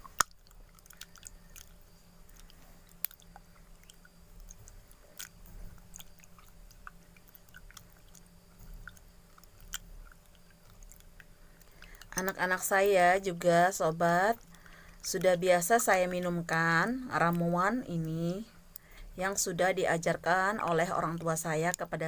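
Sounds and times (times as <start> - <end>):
wet squishing: 0.0 - 12.9.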